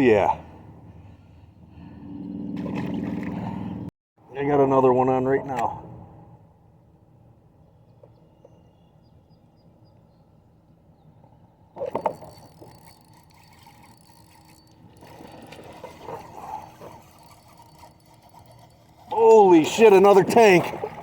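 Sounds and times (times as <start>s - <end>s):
fishing reel being cranked: 11.8s - 20.2s.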